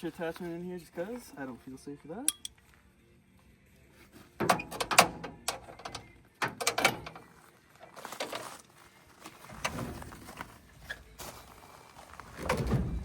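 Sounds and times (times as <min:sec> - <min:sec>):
metal hitch hardware clanking: 0:02.3 - 0:02.6, 0:04.4 - 0:07.4.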